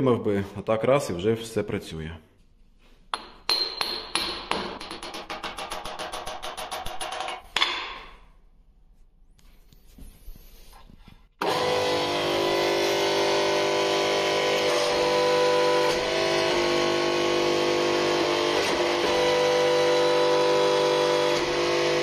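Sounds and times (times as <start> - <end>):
press motor humming: 11.4 - 22.0.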